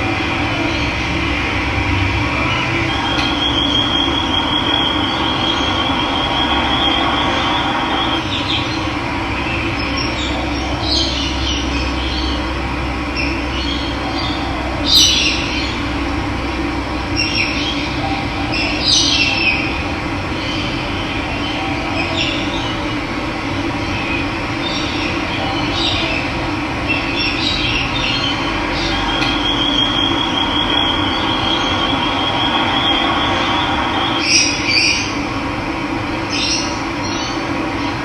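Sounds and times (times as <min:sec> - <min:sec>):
thin high trill: 0:28.8 - 0:35.2.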